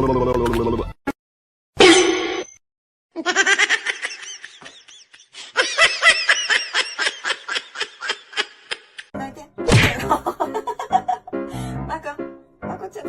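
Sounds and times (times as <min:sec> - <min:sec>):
person laughing hard: 0:03.2 - 0:09.1, 0:10.0 - 0:11.4.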